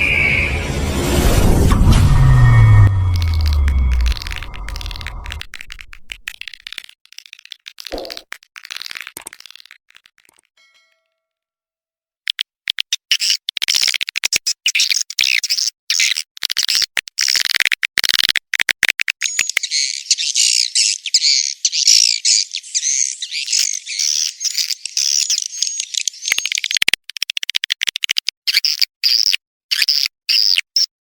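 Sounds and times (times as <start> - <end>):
swiftlets twittering and chirping: 2.9 - 9.7, 19.2 - 26.9.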